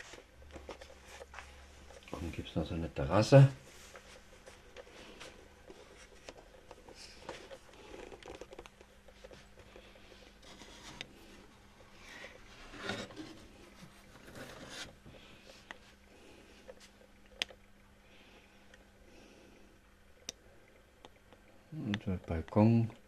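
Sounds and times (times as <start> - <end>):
handling rustles and scrapes: 0.0 - 2.4, 3.6 - 15.7
steady low hum: 0.0 - 23.0.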